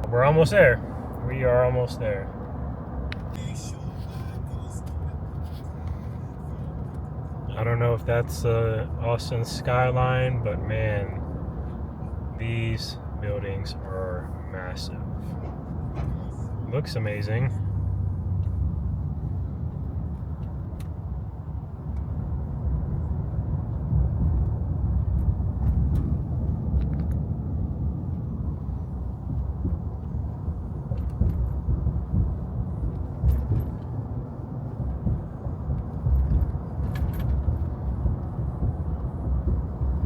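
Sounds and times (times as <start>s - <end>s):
road and tyre noise: 0.0s - 40.0s
faint clicks and rattles: 29.3s - 40.0s.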